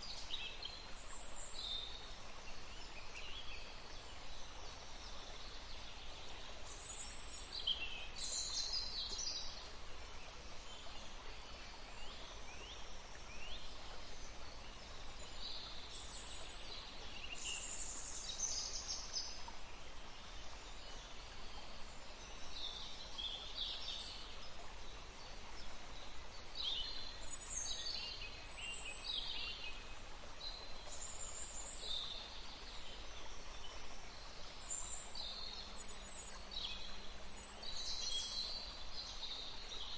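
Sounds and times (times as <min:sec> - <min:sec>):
running water hiss: 0:00.0 - 0:39.9.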